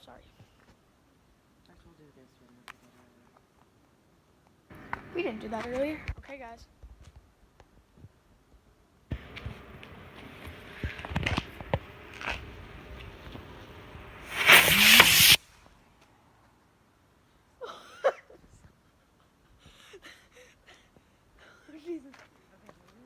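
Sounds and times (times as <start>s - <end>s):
firework hissing: 9.1s - 15.5s.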